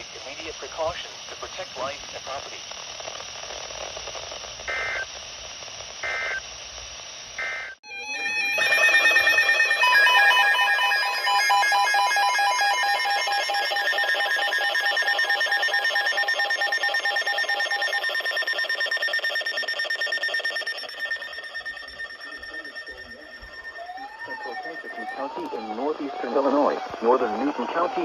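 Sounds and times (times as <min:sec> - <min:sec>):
electronic weather alert alarm warble: 0:06.0 - 0:06.4, 0:07.4 - 0:28.0.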